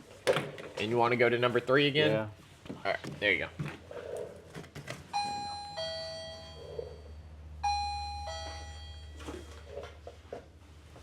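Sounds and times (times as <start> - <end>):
two-tone doorbell chime: 5.1 - 9.7.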